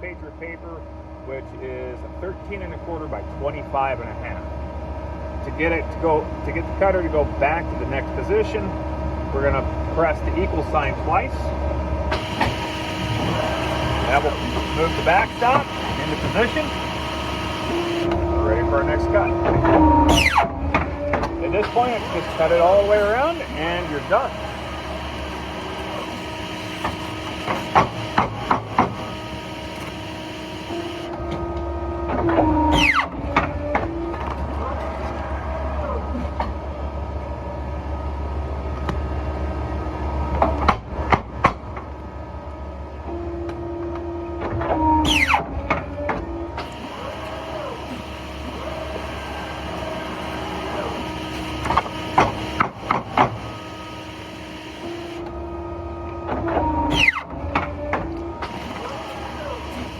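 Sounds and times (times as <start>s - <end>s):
paper cutter humming: 12.1s - 18.3s, 21.3s - 31.2s, 46.6s - 55.4s, 58.2s - 59.9s
brief falling whine: 12.1s - 18.5s, 19.7s - 31.2s, 46.6s - 55.7s
paper cutter knock: 25.8s - 30.0s.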